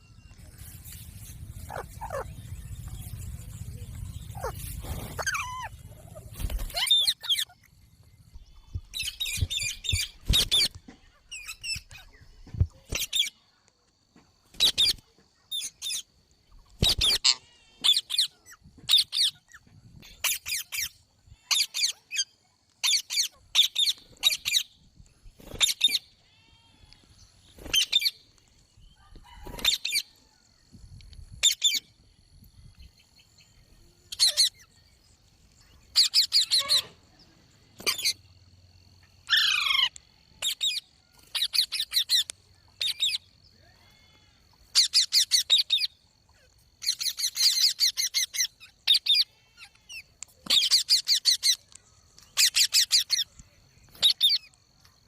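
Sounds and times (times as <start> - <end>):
faint gliding bird calls: 0.0 - 13.8
low rumble: 0.1 - 6.4
parrot screeching calls: 1.6 - 2.6, 4.3 - 7.6.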